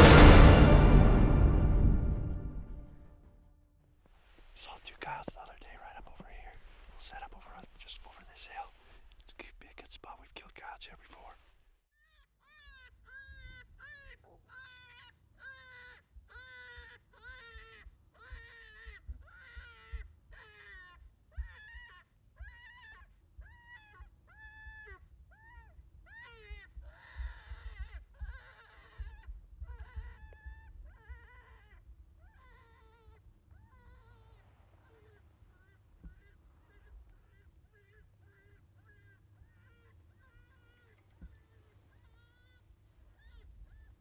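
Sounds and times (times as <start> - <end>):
predator call distress cries: 12.5 - 44.0.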